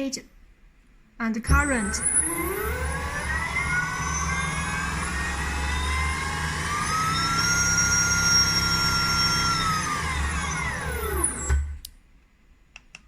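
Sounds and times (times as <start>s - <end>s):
low steady hum: 0.3s - 4.4s
electric motor whining: 1.5s - 11.8s.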